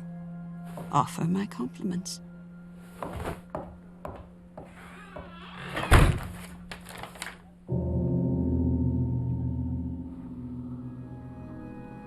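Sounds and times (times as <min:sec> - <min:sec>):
sustained low musical chord: 0:00.0 - 0:03.0, 0:07.6 - 0:12.0
rustling and clatter: 0:06.2 - 0:07.4.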